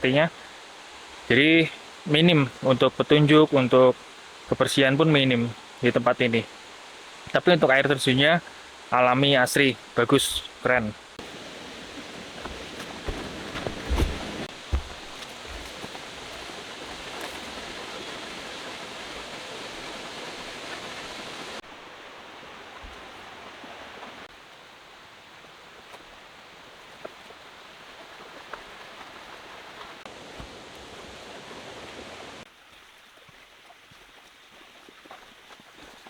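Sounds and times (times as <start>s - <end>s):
waterfall rushing: 11.1s - 24.3s.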